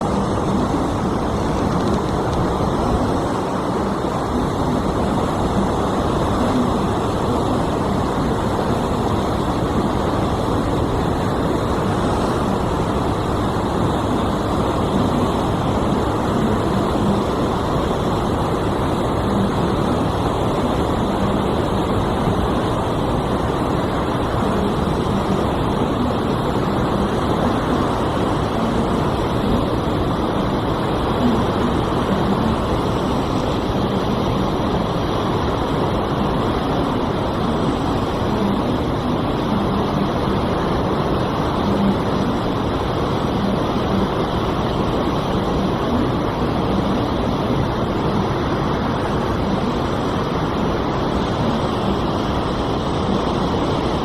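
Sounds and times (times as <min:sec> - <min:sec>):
faint hum: 0:00.0 - 0:54.0
ship engine drone: 0:00.0 - 0:54.0.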